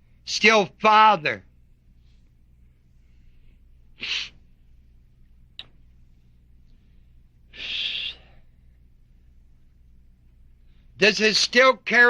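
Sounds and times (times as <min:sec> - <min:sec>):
steady low hum: 0:00.0 - 0:12.0
person breathing close to microphone: 0:02.0 - 0:04.5, 0:06.7 - 0:08.7.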